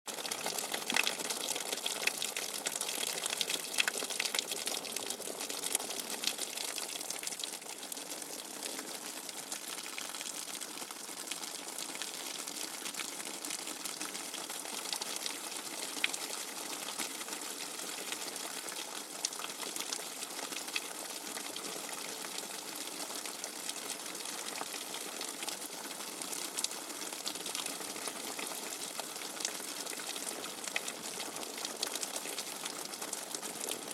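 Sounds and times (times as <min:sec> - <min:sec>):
rainwater gushing: 0:00.1 - 0:09.4
water drips and splashes: 0:00.2 - 0:11.0.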